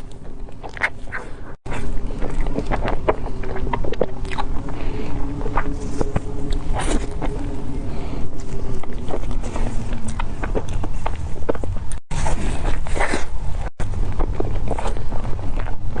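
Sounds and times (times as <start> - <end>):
chewing with wet mouth clicks: 0.0 - 7.7
low rumble: 0.0 - 16.0.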